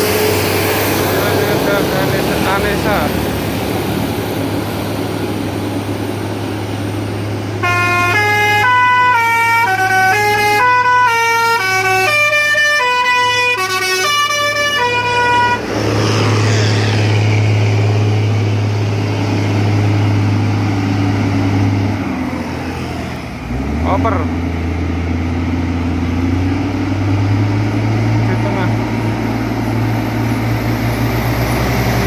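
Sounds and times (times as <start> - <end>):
bus engine droning: 0.0 - 32.0
bus horn playing a tune: 7.6 - 15.7.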